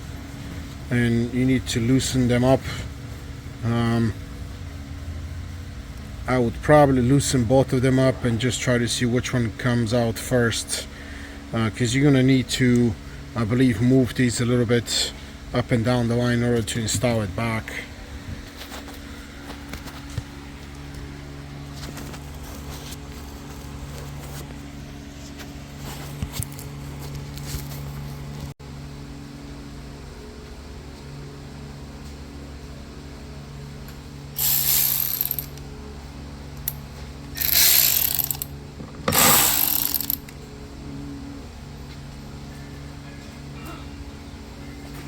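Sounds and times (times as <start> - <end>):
steady low hum: 0.0 - 45.0
ratchet wrench clicking: 34.4 - 35.6, 37.4 - 38.5, 39.1 - 40.4.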